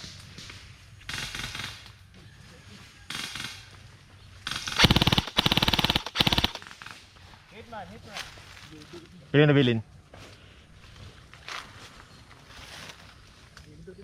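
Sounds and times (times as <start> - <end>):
airsoft guns firing full auto: 1.1 - 1.9, 4.5 - 7.0.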